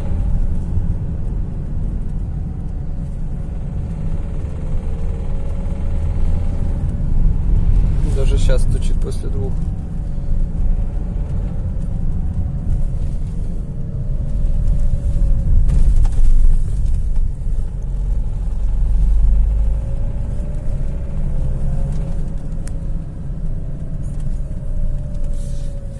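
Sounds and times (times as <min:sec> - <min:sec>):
diesel engine rumbling: 0:00.0 - 0:25.9.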